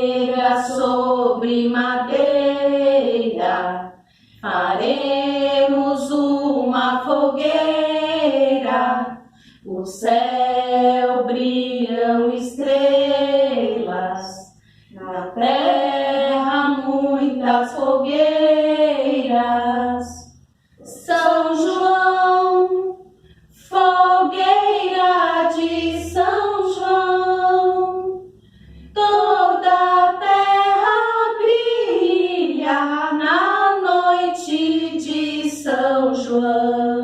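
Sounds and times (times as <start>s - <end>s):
high voice singing: 23.6s - 28.3s.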